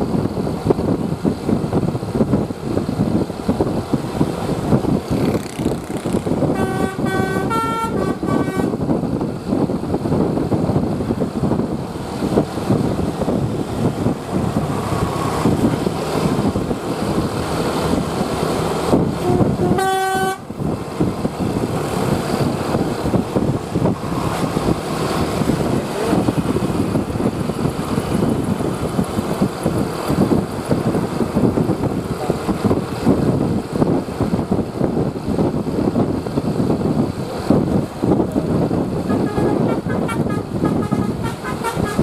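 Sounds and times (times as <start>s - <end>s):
large vehicle rumble: 0.0s - 42.0s
bus horn toot: 5.6s - 9.0s, 19.2s - 20.6s, 39.0s - 42.0s.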